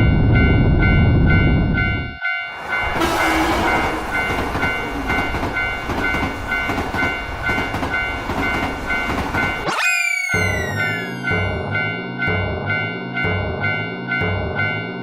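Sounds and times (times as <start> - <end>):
train passing with rushing clatter: 0.0 - 9.7
level-crossing alarm two-tone ding: 1.3 - 15.0.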